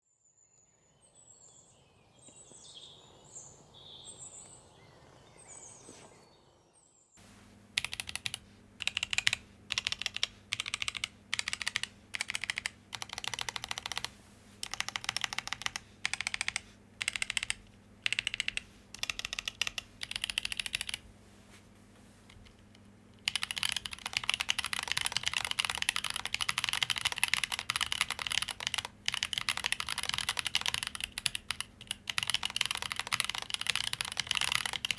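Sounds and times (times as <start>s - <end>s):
mechanical keyboard typing: 7.8s - 21.0s, 23.2s - 34.9s.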